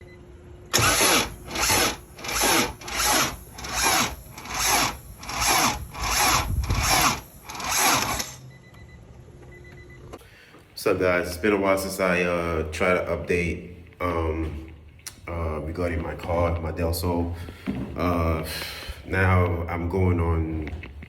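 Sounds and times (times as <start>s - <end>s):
rasping hand tool strokes: 0.8s - 8.4s.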